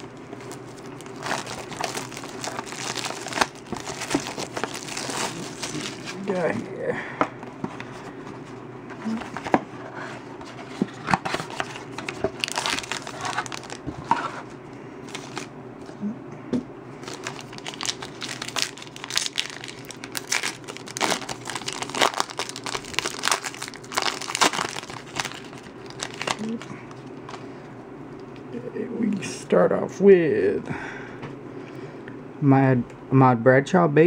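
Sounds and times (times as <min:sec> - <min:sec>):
plastic wrapping crinkling and tearing: 0:00.0 - 0:06.6, 0:10.9 - 0:14.3, 0:15.0 - 0:15.5, 0:17.0 - 0:27.4.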